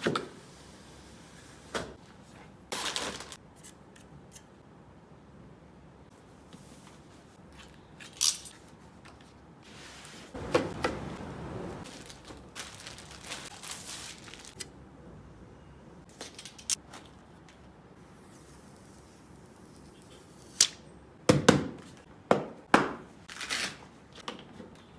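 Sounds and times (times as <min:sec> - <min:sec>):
rustling and scraping: 0:06.6 - 0:10.8.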